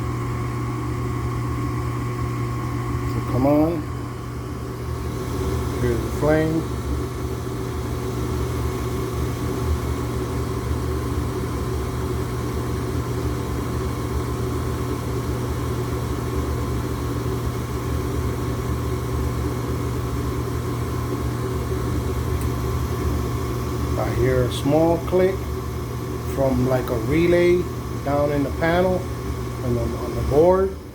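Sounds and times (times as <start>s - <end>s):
furnace motor hum: 0.0s - 30.9s.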